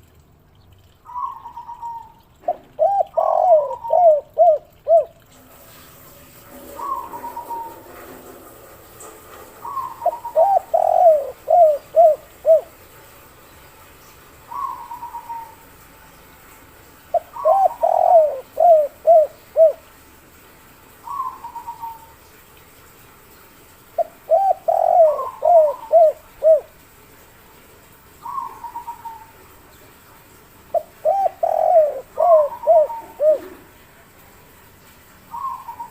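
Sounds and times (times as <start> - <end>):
dove cooing: 1.1 - 5.2, 6.6 - 8.4, 9.5 - 12.8, 14.5 - 15.6, 17.1 - 19.9, 21.0 - 22.2, 24.0 - 26.8, 28.2 - 29.4, 30.7 - 33.8, 35.3 - 35.9.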